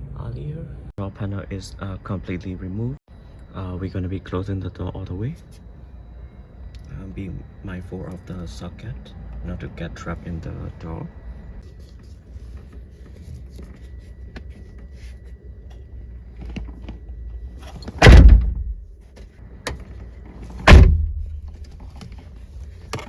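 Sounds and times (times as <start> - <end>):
car door slamming shut: 17.8 - 18.8, 20.6 - 21.7.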